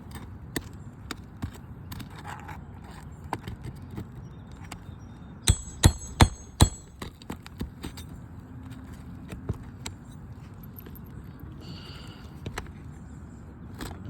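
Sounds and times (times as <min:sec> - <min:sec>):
tapping and scraping on shingles: 0:00.0 - 0:04.9, 0:05.5 - 0:10.4
hammer strikes on metal: 0:05.5 - 0:07.1.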